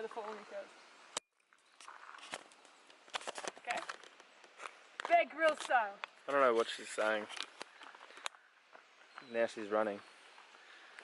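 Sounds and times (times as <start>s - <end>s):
faint footsteps: 1.5s - 9.4s, 10.1s - 11.0s.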